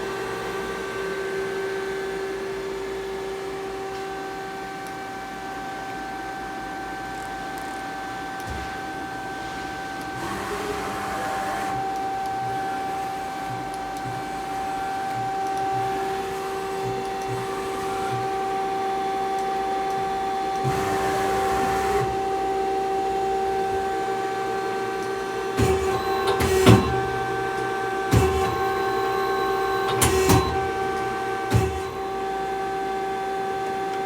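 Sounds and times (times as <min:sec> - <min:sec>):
machine tool mechanical whine: 0:08.4 - 0:34.0
noisy machining bursts: 0:10.1 - 0:18.9, 0:20.6 - 0:22.5, 0:25.4 - 0:32.6.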